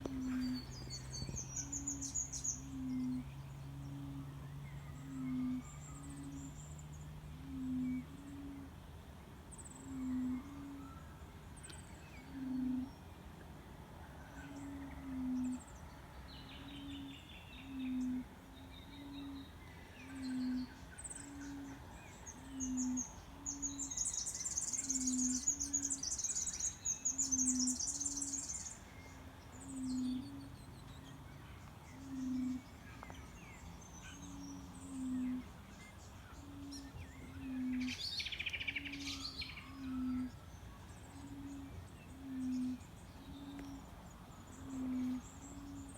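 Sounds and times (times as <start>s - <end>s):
bird calling: 0.0s - 6.6s, 16.6s - 30.6s, 34.0s - 45.9s
birds chirping: 0.0s - 8.8s, 14.1s - 45.9s.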